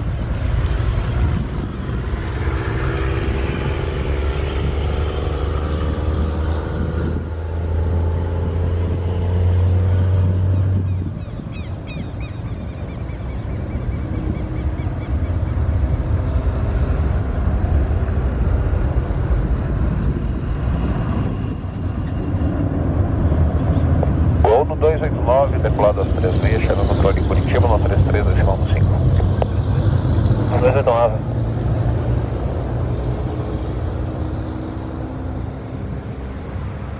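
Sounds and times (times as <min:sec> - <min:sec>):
jet engines rumbling: 0:00.0 - 0:36.9
bird chirping: 0:10.9 - 0:15.7.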